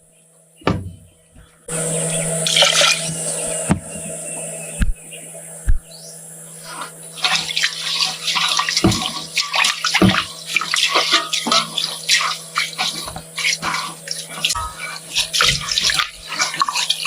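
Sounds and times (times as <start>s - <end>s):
water splashing and sloshing: 6.7s - 17.0s.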